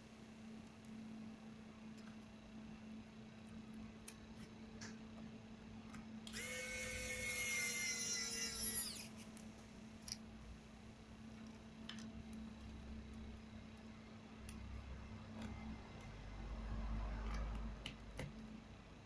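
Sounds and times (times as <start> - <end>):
electric screwdriver whine: 6.3 - 9.2.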